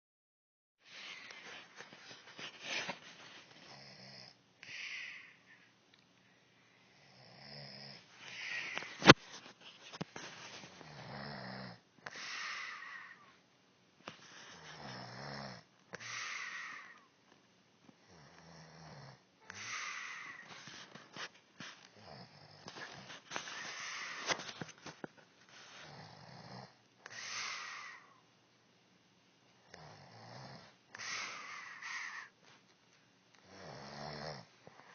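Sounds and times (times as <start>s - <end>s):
woman snoring: 3.7s - 5.4s, 6.9s - 9.2s, 10.8s - 13.3s, 14.6s - 17.1s, 18.0s - 20.6s, 22.0s - 22.8s, 25.8s - 28.2s, 29.7s - 32.4s, 33.4s - 34.9s.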